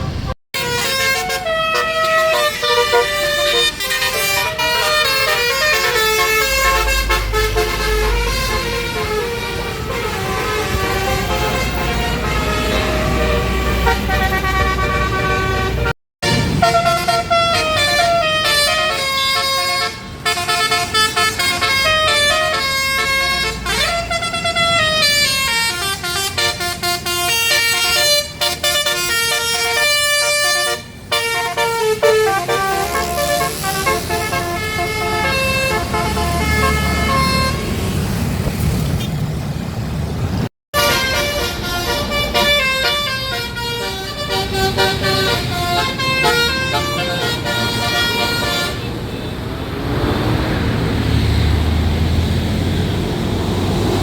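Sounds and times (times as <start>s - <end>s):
bus air horns playing tunes: 0.0s - 38.2s, 40.7s - 49.4s
bus engines running: 0.0s - 54.0s.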